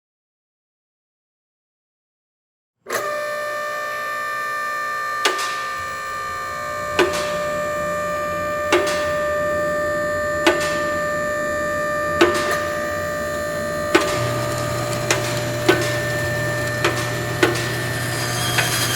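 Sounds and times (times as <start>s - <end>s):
machinery whine and hum: 2.9s - 18.9s
sharp machine clunk: 5.2s - 5.9s, 6.6s - 9.3s, 10.4s - 11.1s, 12.1s - 18.9s.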